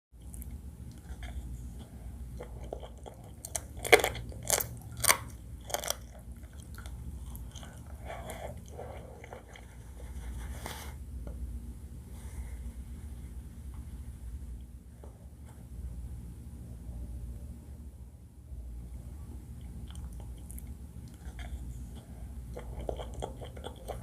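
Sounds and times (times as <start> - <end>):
soft chewing: 0.2 - 10.9, 19.5 - 24.0
crunching bites: 3.4 - 7.7.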